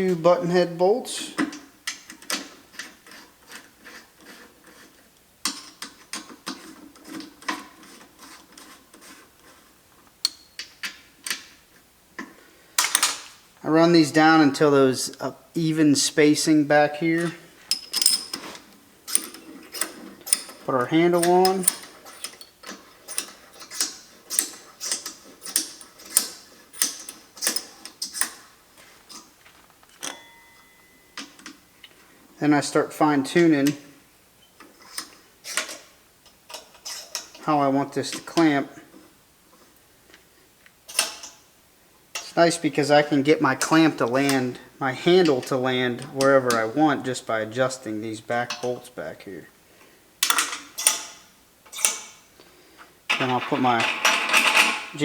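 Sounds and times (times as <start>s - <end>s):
bolts clicking into steel plate: 12.2s - 13.3s, 17.2s - 28.5s, 40.9s - 41.4s, 48.5s - 48.8s, 50.2s - 52.2s, 53.1s - 55.0s
metallic clinks: 17.2s - 18.5s.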